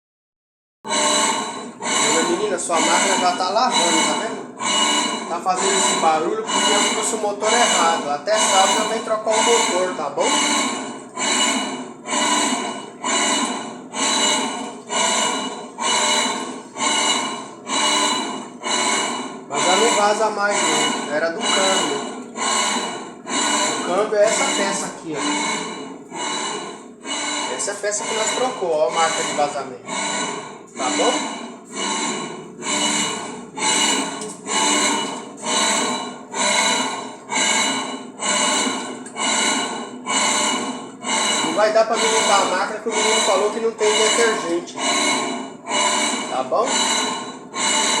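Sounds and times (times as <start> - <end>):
motor whine: 0.9 - 48.0
washing machine agitating: 0.9 - 48.0.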